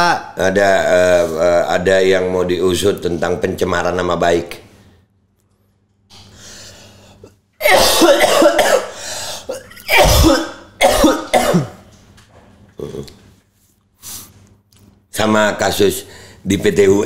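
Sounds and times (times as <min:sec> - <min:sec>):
person coughing hard: 0:07.6 - 0:11.8.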